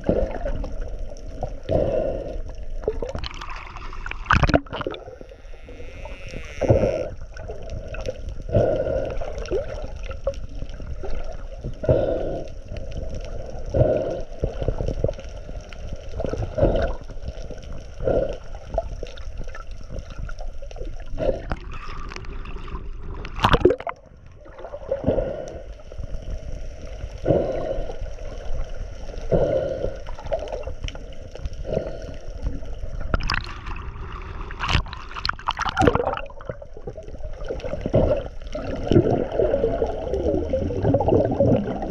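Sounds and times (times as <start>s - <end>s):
water gurgling and sloshing: 0.0s - 41.9s.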